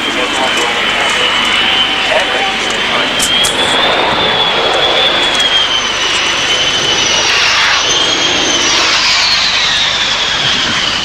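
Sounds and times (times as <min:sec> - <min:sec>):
jet aircraft flying past: 0:00.0 - 0:11.0.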